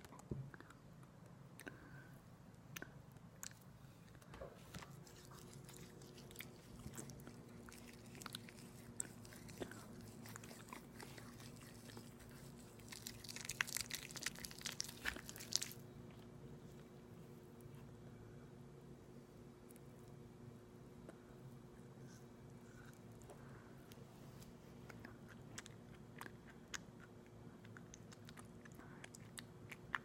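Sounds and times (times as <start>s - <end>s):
crunching and chewing: 2.7s - 16.9s, 24.8s - 30.0s.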